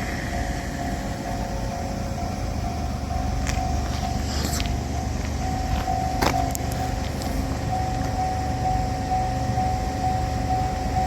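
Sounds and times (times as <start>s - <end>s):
low rumble from track: 0.0s - 11.0s
railroad crossing bell ringing: 0.0s - 11.0s.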